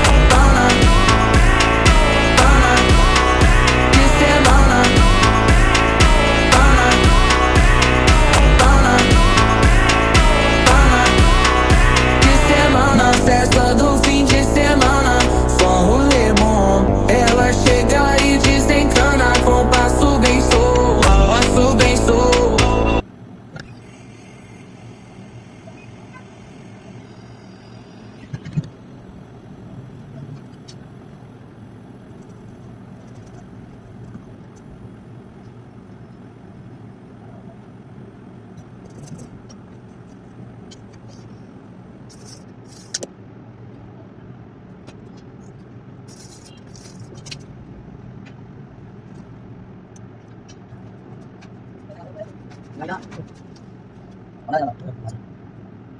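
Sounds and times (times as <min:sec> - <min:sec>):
low background noise: 0:23.0 - 0:55.9.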